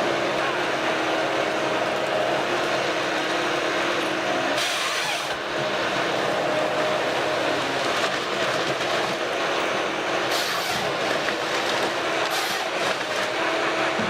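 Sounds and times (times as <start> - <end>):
heavy machinery running: 0.0 - 14.0.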